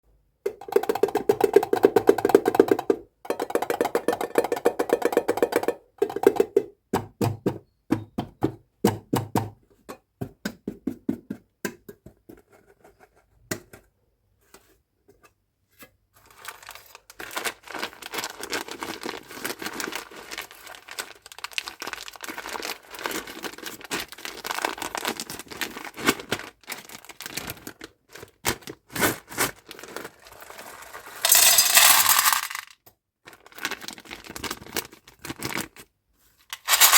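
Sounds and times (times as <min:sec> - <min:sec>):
plastic packaging crinkling and tearing: 0:16.3 - 0:31.2, 0:33.3 - 0:35.8
hard candies knocking together: 0:31.2 - 0:32.7, 0:36.6 - 0:36.9.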